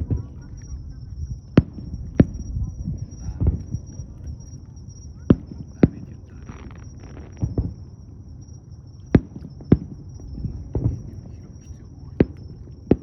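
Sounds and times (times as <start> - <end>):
low steady rumble: 0.0 - 13.0
fireworks bangs: 5.2 - 8.1, 9.1 - 13.0.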